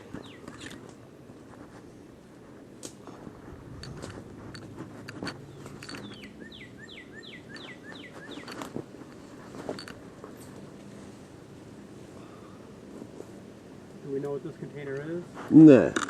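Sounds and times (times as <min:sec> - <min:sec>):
footsteps crackling through undergrowth: 0:00.0 - 0:11.7
songbird whistled notes: 0:06.0 - 0:08.5.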